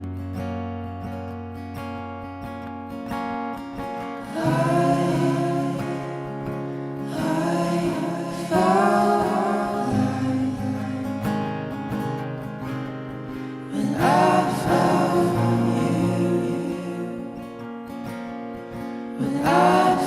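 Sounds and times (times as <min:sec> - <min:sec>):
strummed acoustic guitar: 0:00.0 - 0:20.0
person singing: 0:04.2 - 0:11.5, 0:13.5 - 0:17.6, 0:19.1 - 0:20.0.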